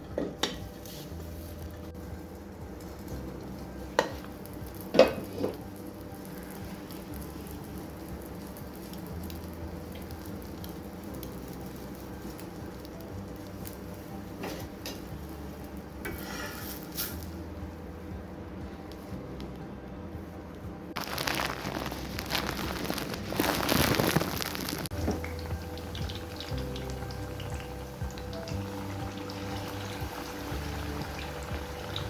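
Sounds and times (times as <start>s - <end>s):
food sizzling in a pan: 0.6s - 17.4s, 21.0s - 32.0s
stirring scrape: 16.0s - 17.2s.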